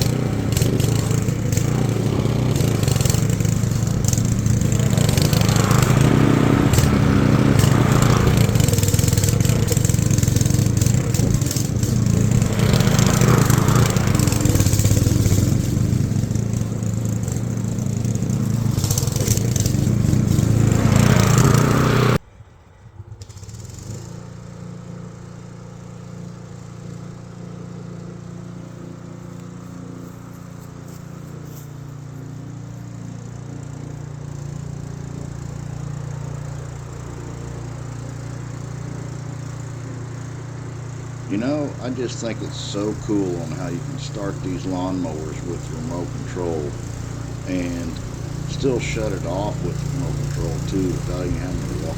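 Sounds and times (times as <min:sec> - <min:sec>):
lawnmower engine running: 0:00.0 - 0:51.9.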